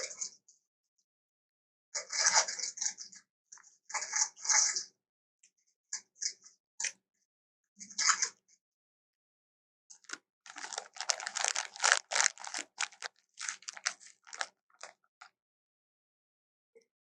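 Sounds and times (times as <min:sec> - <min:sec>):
elephant chewing and crunching: 0:10.5 - 0:14.9.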